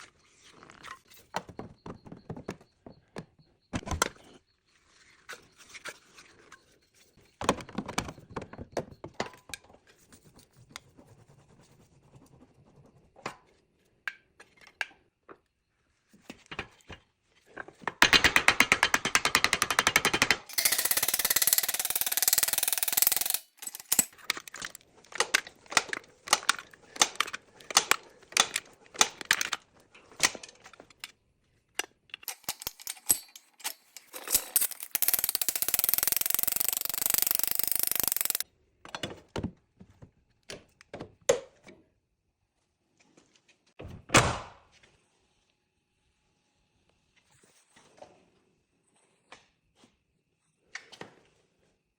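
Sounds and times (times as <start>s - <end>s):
taps on metal: 18.0s - 24.1s
loud rapid rattling: 19.5s - 24.1s, 32.3s - 38.4s
power tool bursts: 20.5s - 24.1s, 32.3s - 38.4s.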